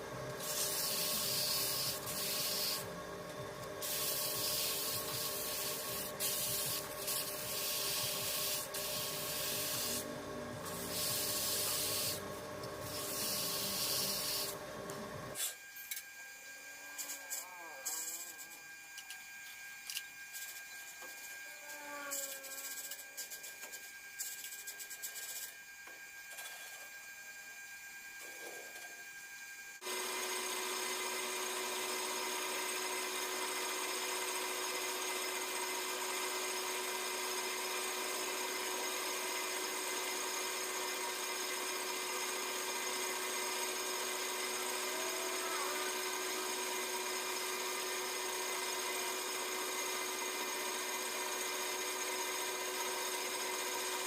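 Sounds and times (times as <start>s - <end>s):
lathe machine whine: 0.0s - 17.2s, 29.0s - 54.0s.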